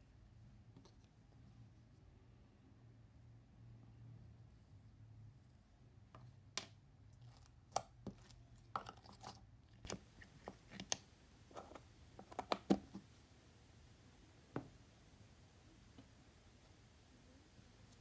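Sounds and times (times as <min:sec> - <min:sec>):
faint low hum: 0:00.0 - 0:18.0.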